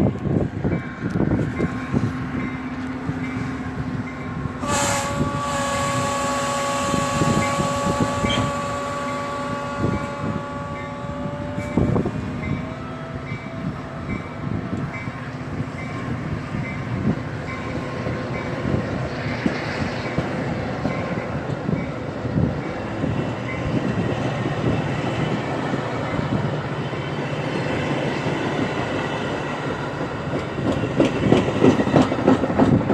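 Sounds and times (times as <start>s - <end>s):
train wheels clacking on rails: 0.0s - 32.9s
train horn chord: 4.6s - 15.3s.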